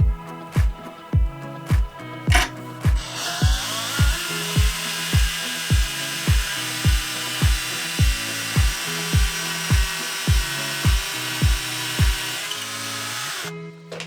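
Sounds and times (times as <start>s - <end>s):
background music with kick drum: 0.0s - 14.0s
rotary tool grinding brass: 2.3s - 13.5s.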